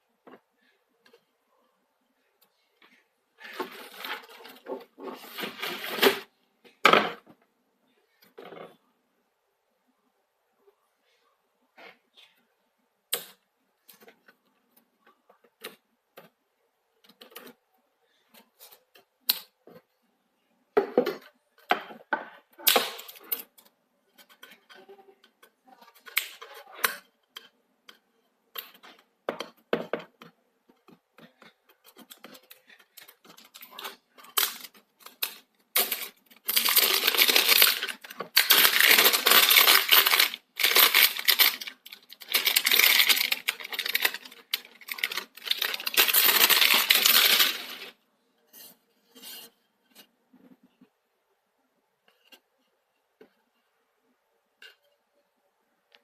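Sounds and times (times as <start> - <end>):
packaging rustling: 32.9 - 47.9.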